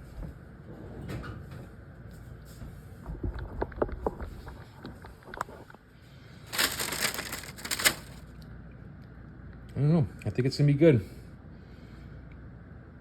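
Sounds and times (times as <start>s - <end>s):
bread crust crinkling and crackling: 6.4s - 8.4s.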